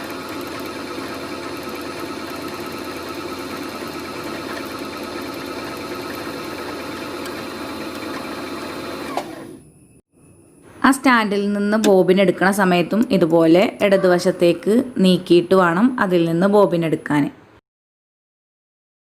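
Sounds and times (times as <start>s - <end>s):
sewing machine running: 0.0s - 9.6s.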